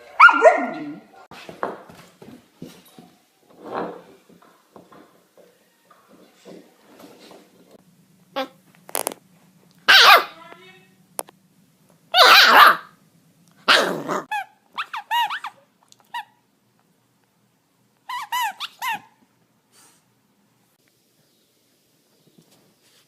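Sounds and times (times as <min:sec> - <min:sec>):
dog barking and yelping: 0:00.0 - 0:01.0, 0:09.8 - 0:10.4, 0:12.1 - 0:13.0, 0:13.6 - 0:16.3, 0:18.1 - 0:19.2.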